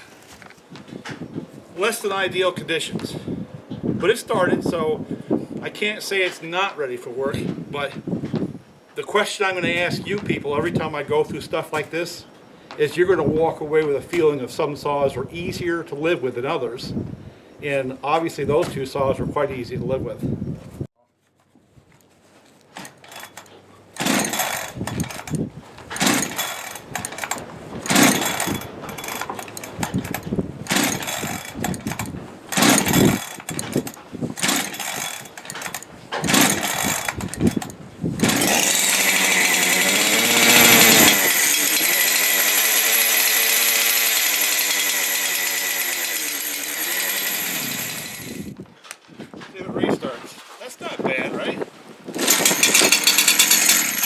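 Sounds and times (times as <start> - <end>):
chainsaw revving and idling: 22.8 - 48.5, 52.2 - 54.0
chainsaw cranking and sputtering: 22.8 - 48.6, 52.2 - 54.0.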